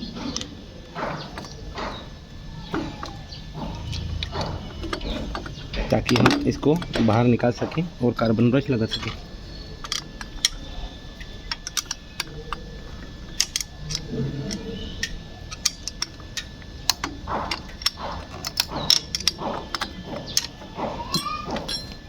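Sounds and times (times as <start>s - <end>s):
spanner clinking on metal: 2.6s - 10.8s, 13.3s - 22.0s.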